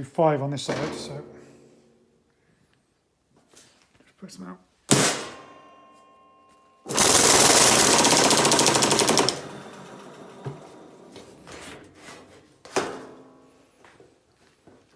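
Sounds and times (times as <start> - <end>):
sharp metallic clang: 4.9 - 7.0
power hammer hammering: 6.9 - 11.0.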